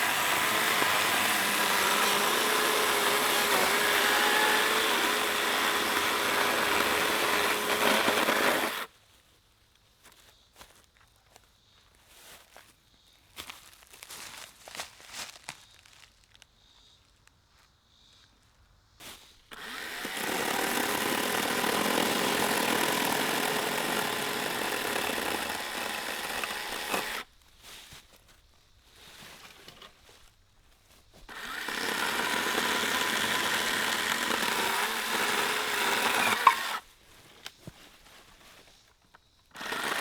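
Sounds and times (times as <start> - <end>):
electric chainsaw cutting wood: 0.0 - 8.9, 19.5 - 27.2, 31.3 - 36.8, 39.5 - 40.0.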